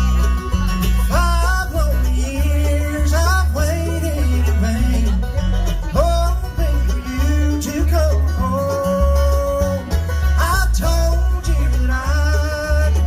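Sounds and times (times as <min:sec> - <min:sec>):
bluegrass band playing: 0:00.0 - 0:13.0
sliding lead melody line: 0:00.0 - 0:13.0.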